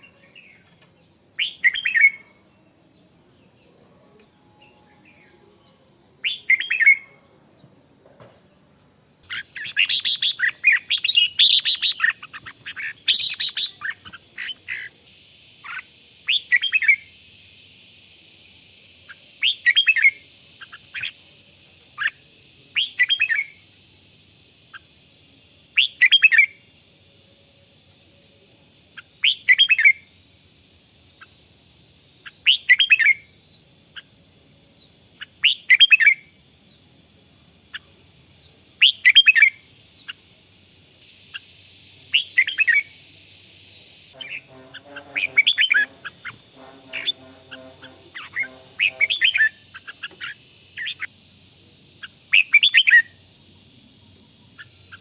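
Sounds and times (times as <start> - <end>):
steady high-pitched whine: 0.0 - 55.0
bulbul singing: 1.4 - 3.0, 6.2 - 7.2, 9.2 - 23.8, 28.8 - 30.2, 30.9 - 51.2, 52.0 - 53.3.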